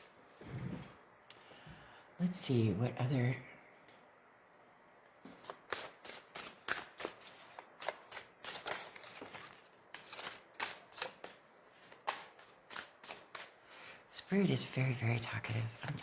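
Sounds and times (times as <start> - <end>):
cards being shuffled: 5.2 - 13.6.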